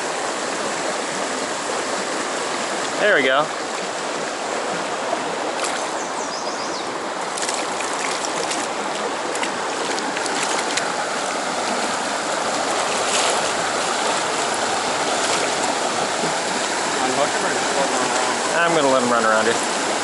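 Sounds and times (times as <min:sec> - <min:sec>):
stream water rushing: 0:00.0 - 0:20.0.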